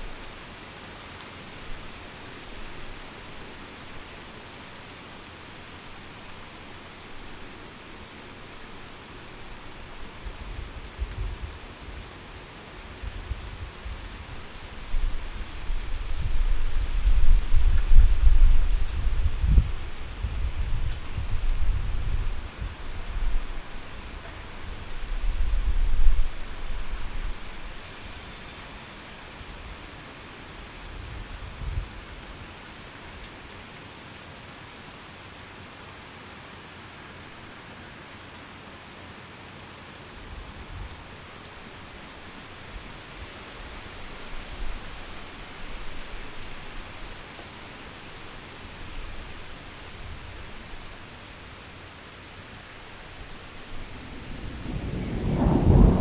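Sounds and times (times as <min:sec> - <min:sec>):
heavy rain falling: 0:00.0 - 0:56.0
thunder rolling: 0:53.6 - 0:56.0.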